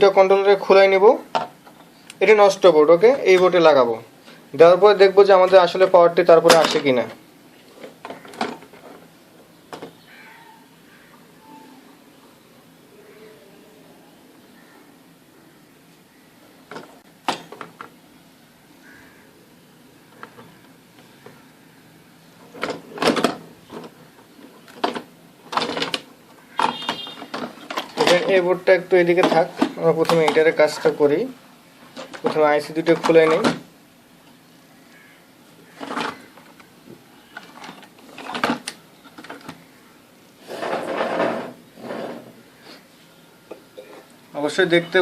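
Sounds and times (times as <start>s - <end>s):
scraping and shuffling on workbench: 40.4s - 42.4s.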